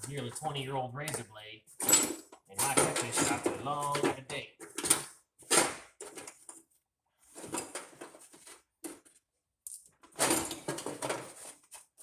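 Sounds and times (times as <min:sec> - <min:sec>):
hand tools clattering in metal toolbox: 0:01.8 - 0:06.5, 0:10.1 - 0:11.6.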